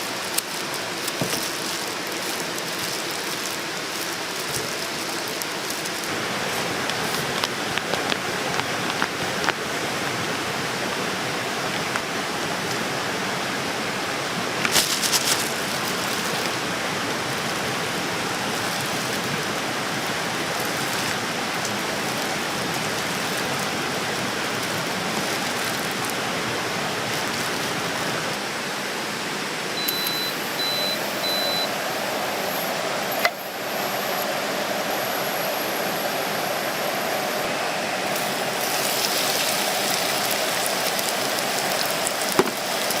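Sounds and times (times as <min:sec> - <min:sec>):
steady rain falling: 0:00.0 - 0:43.0
short high beeps: 0:29.8 - 0:31.7.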